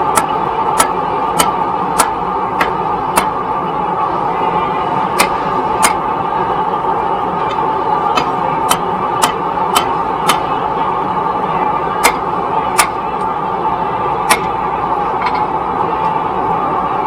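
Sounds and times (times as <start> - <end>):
steady rushing noise: 0.0 - 17.0
hammer striking metal on anvil: 0.1 - 3.4, 5.2 - 6.0, 8.2 - 10.5, 12.0 - 12.2, 12.8 - 13.0, 14.3 - 14.5.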